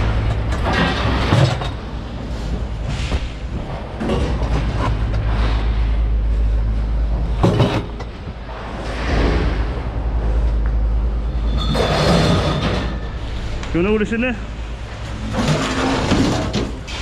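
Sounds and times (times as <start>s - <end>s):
steady low rumble: 0.0s - 12.0s, 12.6s - 15.5s
scrap metal thrown into bin: 15.2s - 17.0s.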